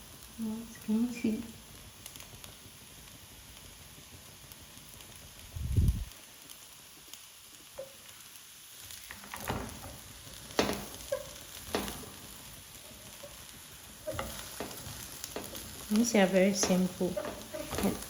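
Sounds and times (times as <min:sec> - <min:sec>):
food simmering in a pot: 0:00.0 - 0:18.0
utensil clinking against pot: 0:16.6 - 0:18.0.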